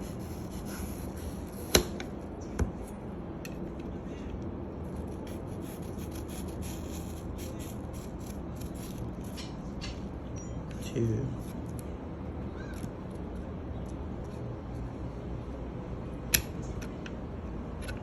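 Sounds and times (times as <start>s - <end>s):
knife cutting an apple: 0.0s - 2.1s, 5.0s - 10.0s.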